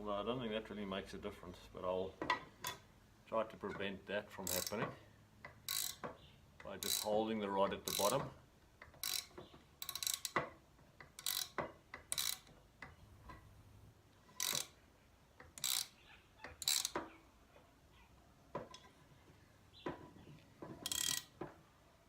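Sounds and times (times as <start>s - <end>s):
spanner clicking and scraping: 4.4s - 7.2s, 7.8s - 13.5s, 14.2s - 14.8s, 15.4s - 17.1s, 20.6s - 21.5s.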